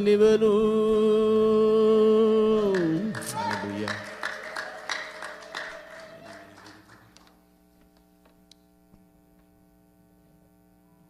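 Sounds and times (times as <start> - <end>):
electrical hum: 0.0 - 11.0
rhythmic clapping: 2.6 - 7.5.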